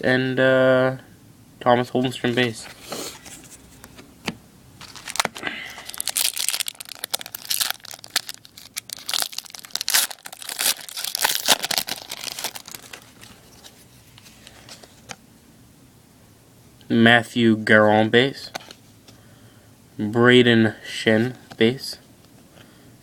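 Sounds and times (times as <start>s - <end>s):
wrapper tearing and crinkling: 4.8s - 13.6s.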